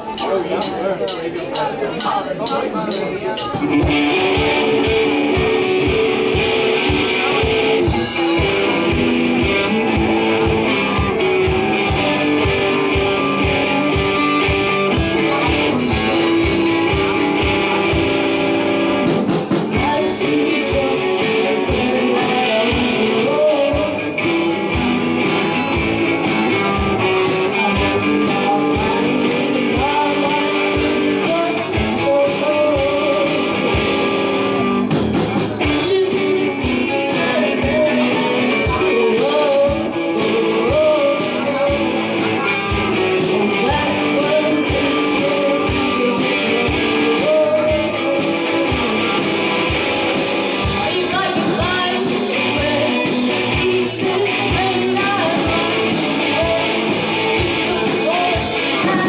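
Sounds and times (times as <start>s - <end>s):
rock band playing: 0.0s - 59.0s
person singing: 3.6s - 59.0s.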